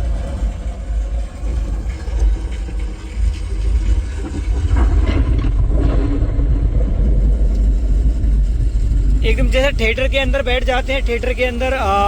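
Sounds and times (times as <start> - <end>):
heavy deep bass: 5.4 - 12.0.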